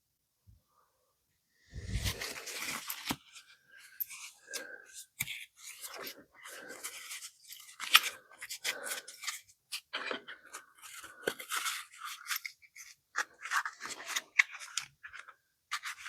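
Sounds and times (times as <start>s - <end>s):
small tools rustling and scraping: 1.7s - 16.0s.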